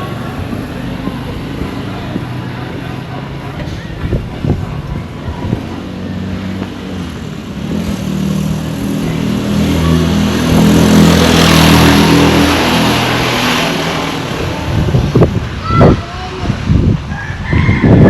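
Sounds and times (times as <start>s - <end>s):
vehicle driving past: 5.1s - 15.3s.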